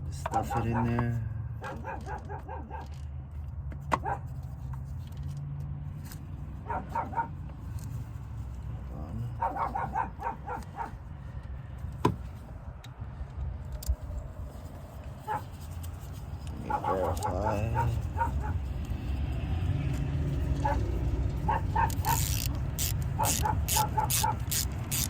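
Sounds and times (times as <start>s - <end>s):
dog barking: 0.3s - 3.0s, 4.0s - 4.3s, 6.6s - 7.4s, 9.1s - 11.0s, 15.2s - 15.5s, 16.5s - 18.7s, 20.5s - 22.4s, 23.2s - 24.6s
sharp metallic clicks: 19.9s - 25.0s.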